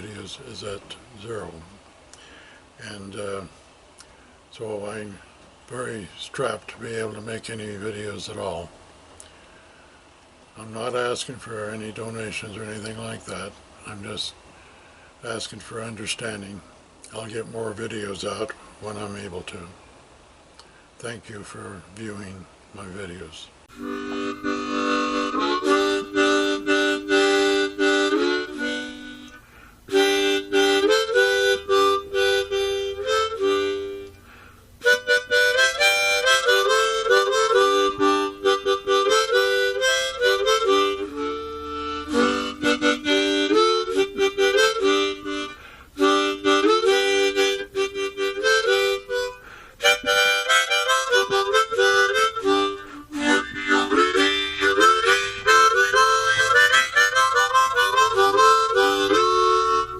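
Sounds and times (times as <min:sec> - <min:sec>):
reedy instrumental melody in chords: 0:23.7 - 0:34.2, 0:34.8 - 0:59.9.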